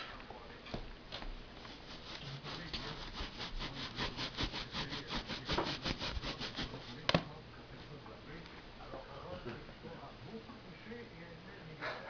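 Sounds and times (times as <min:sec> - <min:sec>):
scratchy rubbing of cat fur: 0:01.6 - 0:07.1.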